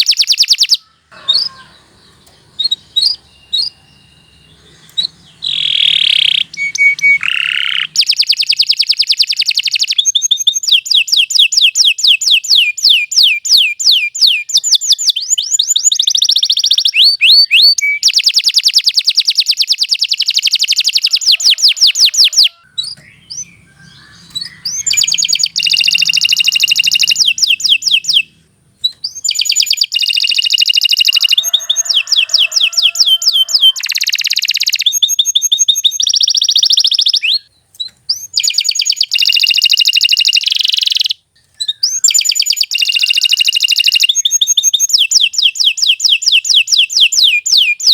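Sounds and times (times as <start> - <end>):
canary singing rolling trills: 0.0 - 47.9.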